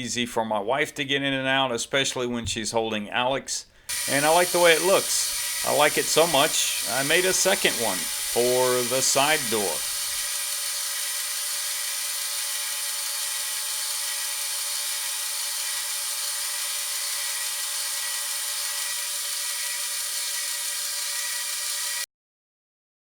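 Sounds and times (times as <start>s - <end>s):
machine tool whining: 3.9s - 22.0s.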